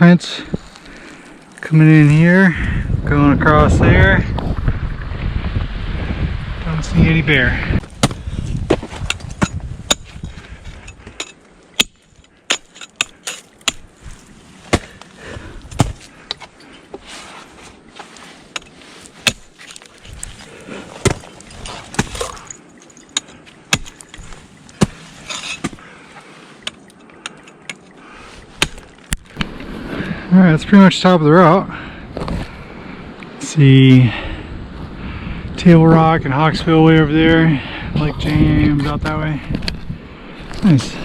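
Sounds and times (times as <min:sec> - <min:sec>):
scraping on ice: 0:23.9 - 0:25.8.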